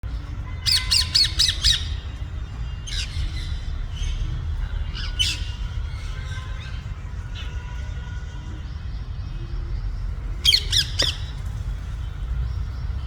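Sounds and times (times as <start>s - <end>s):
parrots squawking: 2.9s - 7.5s, 10.4s - 11.4s.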